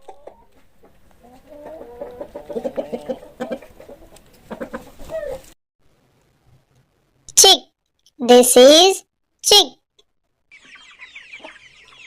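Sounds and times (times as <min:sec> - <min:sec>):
chicken clucking: 0:00.0 - 0:05.5, 0:10.5 - 0:12.0.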